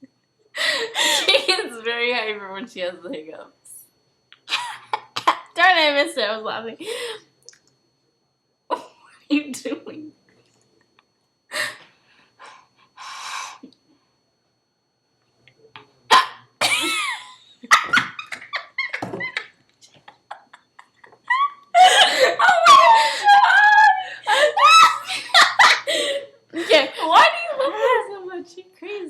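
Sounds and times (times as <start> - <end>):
girl giggling: 0.6 - 1.8, 16.6 - 28.1
girl squealing and yelping: 21.3 - 25.5.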